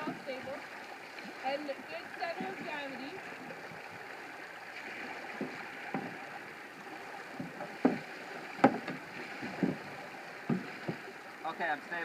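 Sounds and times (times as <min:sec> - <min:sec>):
knocks on canoe hull: 0:02.2 - 0:02.8, 0:05.3 - 0:06.4, 0:07.2 - 0:11.1.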